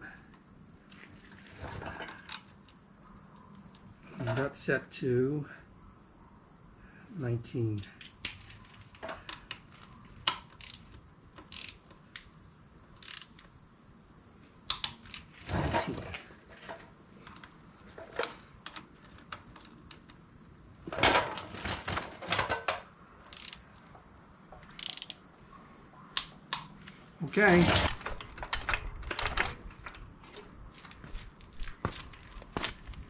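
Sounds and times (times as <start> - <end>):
torque wrench ratcheting: 10.6 - 11.8, 13.0 - 13.4, 23.3 - 23.6, 24.7 - 25.2.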